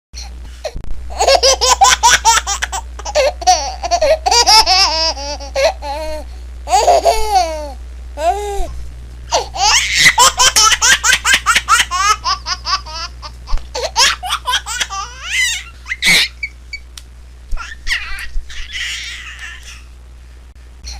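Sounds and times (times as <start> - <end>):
baby giggling: 1.1 - 8.3, 9.3 - 16.6, 17.6 - 19.9
baby squealing: 9.6 - 10.4, 13.8 - 16.6, 17.6 - 19.8.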